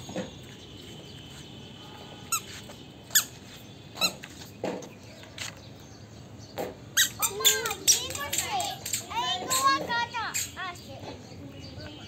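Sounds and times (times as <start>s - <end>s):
short high squeaks: 2.3s - 3.4s, 4.0s - 4.3s, 7.0s - 8.1s, 8.9s - 10.6s.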